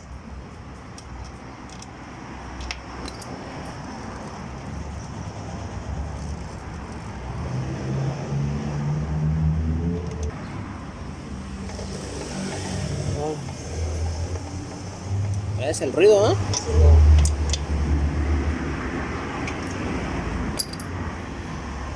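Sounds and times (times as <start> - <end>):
metallic clinks of hand tools: 20.6 - 21.0.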